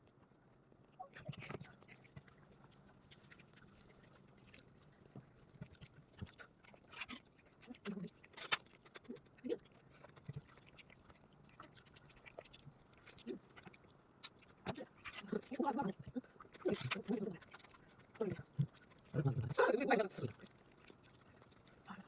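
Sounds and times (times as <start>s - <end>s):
baby chewing and smacking: 0.0s - 19.6s, 20.2s - 22.0s.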